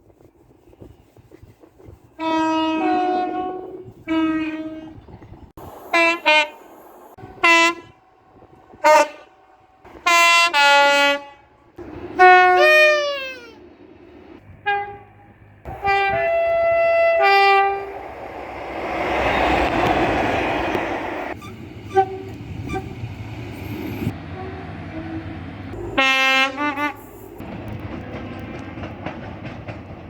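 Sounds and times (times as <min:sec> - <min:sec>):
train horn blasts: 0:02.1 - 0:13.6, 0:14.6 - 0:23.0, 0:24.0 - 0:27.4.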